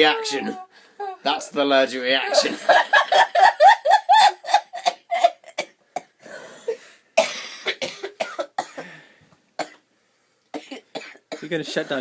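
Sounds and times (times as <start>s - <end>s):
woman laughing: 2.3s - 5.6s
breathy in-breath: 6.2s - 7.1s, 8.7s - 9.4s.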